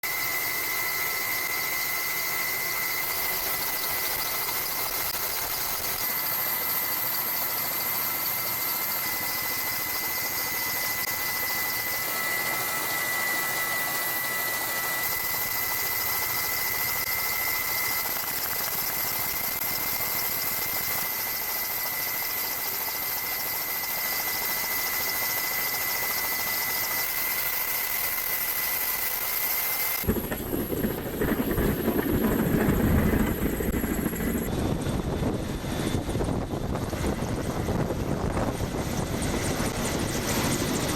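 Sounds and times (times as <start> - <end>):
engine whining: 29.9 - 40.9.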